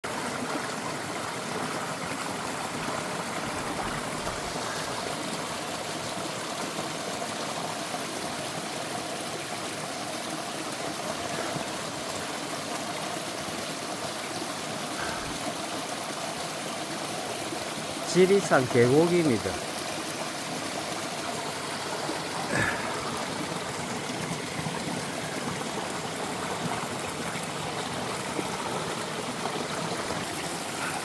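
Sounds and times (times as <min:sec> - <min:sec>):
stream rushing over rocks: 0:00.1 - 0:31.0.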